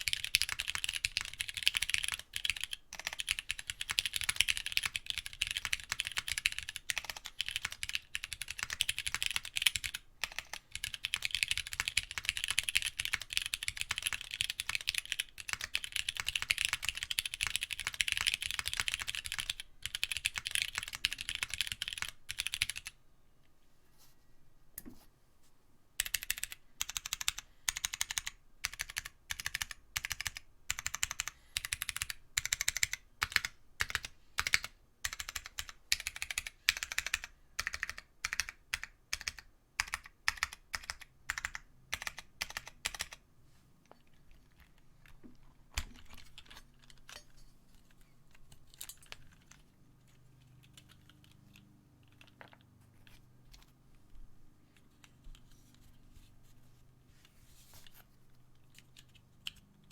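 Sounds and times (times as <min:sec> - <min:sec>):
mechanical keyboard typing: 0:00.0 - 0:23.0, 0:26.0 - 0:43.2, 0:47.9 - 0:53.7, 0:58.6 - 0:59.9.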